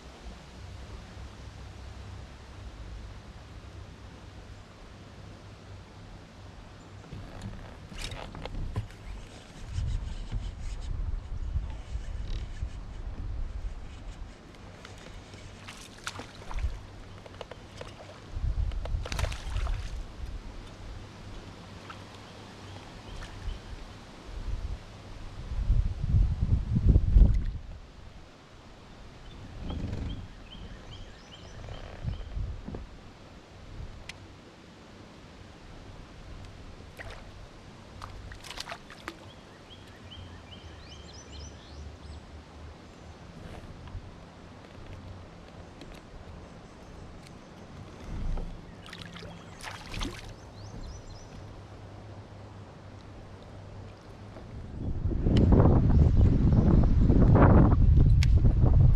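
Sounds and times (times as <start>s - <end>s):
wind rumble on microphone: 7.0s - 21.5s, 23.0s - 28.3s, 29.0s - 34.2s, 43.3s - 58.9s.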